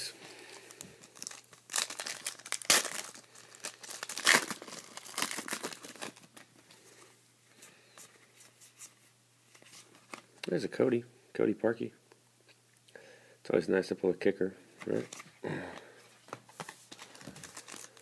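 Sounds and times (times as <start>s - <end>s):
cards rustling: 0.6s - 6.7s, 14.8s - 18.0s
wrapper being torn open: 1.0s - 6.5s, 17.0s - 18.0s.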